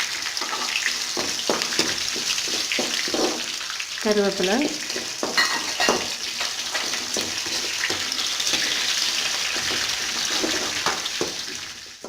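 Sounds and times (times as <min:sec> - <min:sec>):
food sizzling in hot oil: 0:00.0 - 0:12.0
spoon knocking while stirring: 0:00.4 - 0:03.5, 0:04.9 - 0:08.8, 0:09.5 - 0:11.5.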